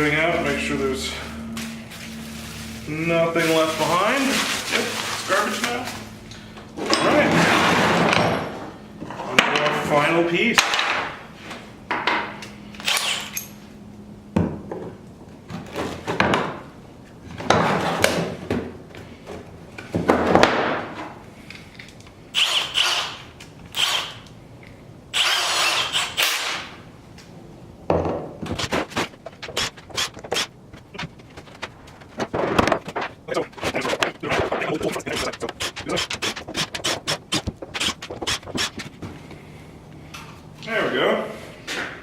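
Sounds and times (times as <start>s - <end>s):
packing material rustling: 1.4s - 6.2s
metal parts scraping and knocking: 28.5s - 39.0s.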